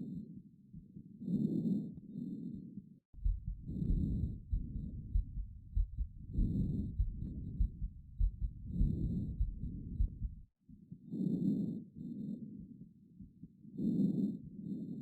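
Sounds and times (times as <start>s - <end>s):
low heartbeat thuds: 3.2s - 10.5s.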